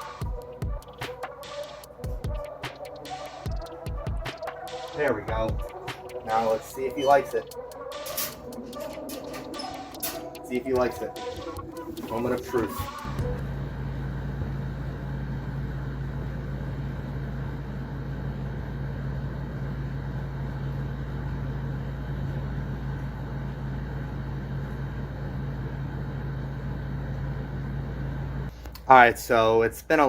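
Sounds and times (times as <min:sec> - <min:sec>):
low machine hum: 0:00.0 - 0:29.6.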